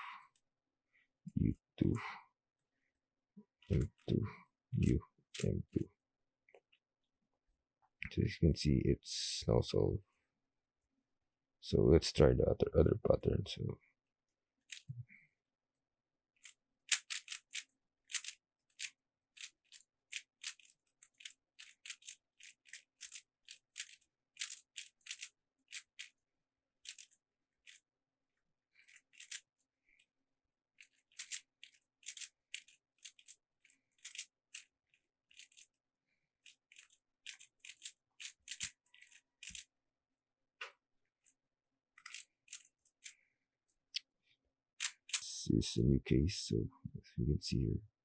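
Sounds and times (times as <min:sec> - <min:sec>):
puzzle cube twisting clicks: 0:14.7 - 0:14.9, 0:16.4 - 0:26.2, 0:26.8 - 0:27.8, 0:28.8 - 0:29.4, 0:30.8 - 0:35.8, 0:36.4 - 0:39.7, 0:42.0 - 0:43.1.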